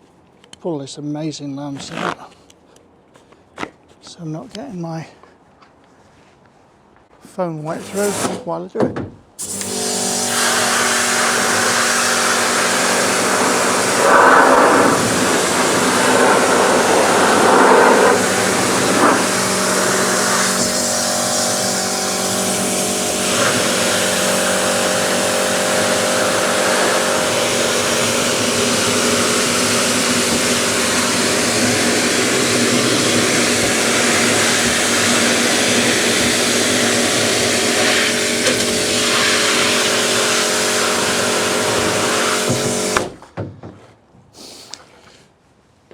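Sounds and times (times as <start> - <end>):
water jet hissing on plastic bin: 7.7 - 8.4, 9.4 - 43.2
pressure washer motor humming: 9.4 - 43.2.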